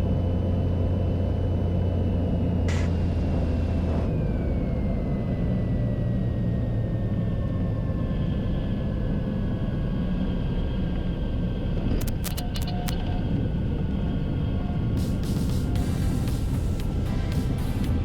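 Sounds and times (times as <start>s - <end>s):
aircraft engine drone in cabin: 0.0s - 18.0s
high whine gliding down: 2.6s - 7.7s.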